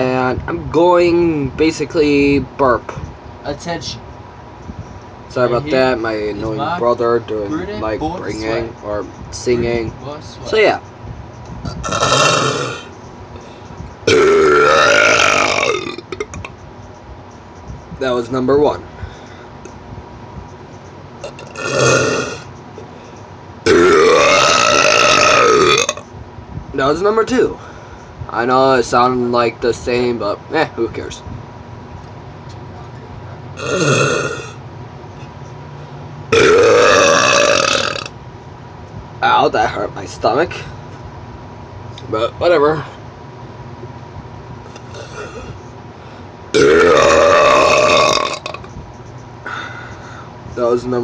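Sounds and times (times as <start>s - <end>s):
person burping: 11.7s - 12.9s, 14.1s - 16.4s, 21.2s - 22.4s, 23.6s - 26.0s, 33.6s - 34.6s, 36.3s - 38.1s, 44.8s - 45.6s, 46.5s - 48.7s.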